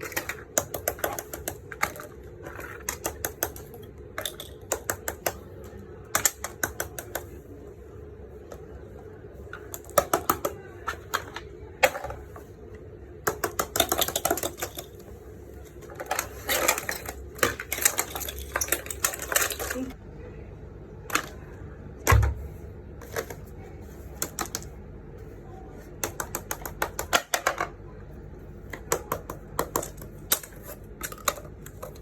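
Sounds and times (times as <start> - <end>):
plastic fidget toys clicking: 0.0 - 7.4, 13.3 - 15.0, 26.0 - 27.7.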